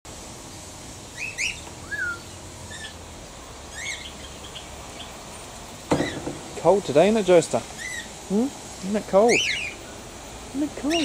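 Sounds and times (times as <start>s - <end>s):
low background hum: 0.1s - 11.0s
bird whistle: 1.1s - 3.0s, 3.7s - 4.6s, 7.8s - 8.1s
small birds chirping: 1.1s - 11.0s.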